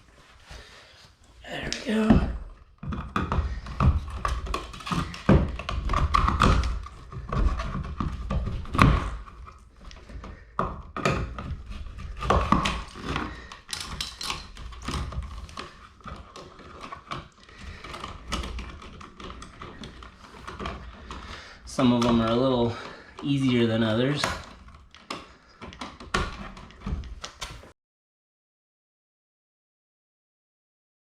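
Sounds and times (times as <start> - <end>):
outlet box knocking and scraping: 2.2 - 22.4.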